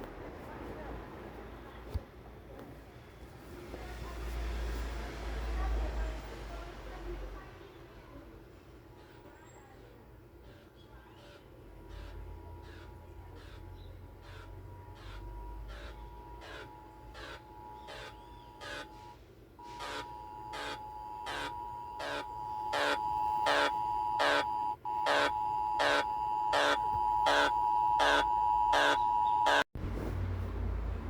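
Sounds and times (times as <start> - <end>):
rapid pulsing beeps: 11.2 - 29.7.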